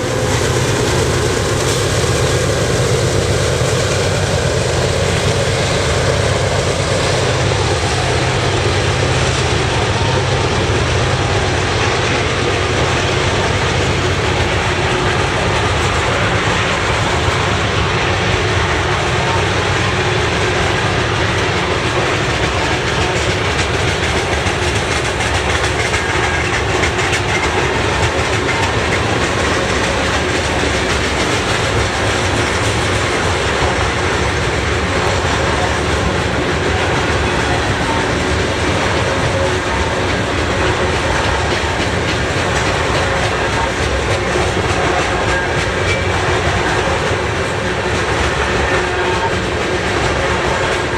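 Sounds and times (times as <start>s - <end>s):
freight train wheels on rail: 0.0s - 50.9s.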